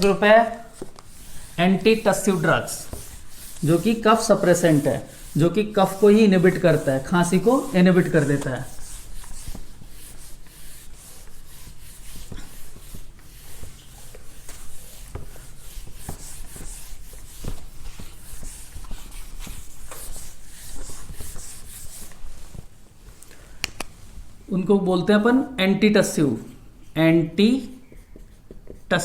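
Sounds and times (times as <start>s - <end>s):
handwriting scratching strokes: 0.0s - 22.2s.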